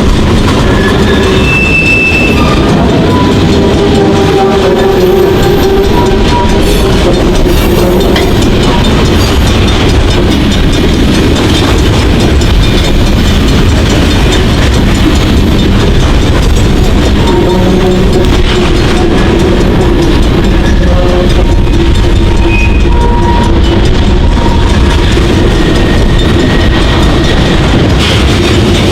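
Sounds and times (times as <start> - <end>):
train wheels rumbling on rails: 0.0 - 28.9.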